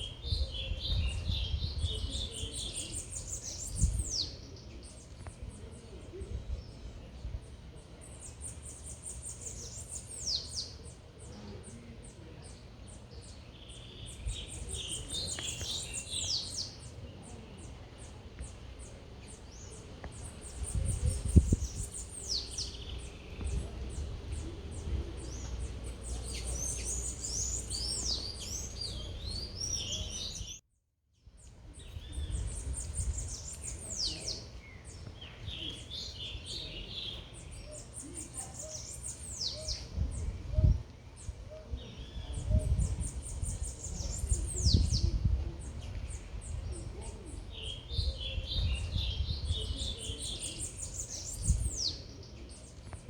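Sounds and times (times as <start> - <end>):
low rumble of city background: 0.0 - 30.6.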